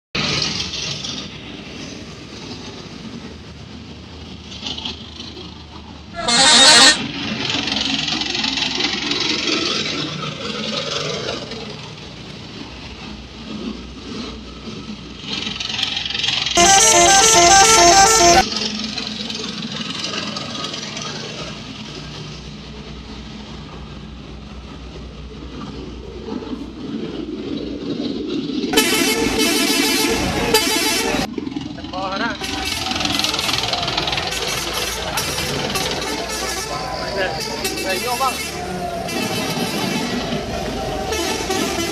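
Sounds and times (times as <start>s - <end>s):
vehicle and outdoor noise: 0.2s - 41.9s
multi-tone musical horn blast: 6.2s - 7.0s, 16.6s - 18.5s, 28.8s - 31.3s, 34.3s - 40.3s, 41.0s - 41.9s.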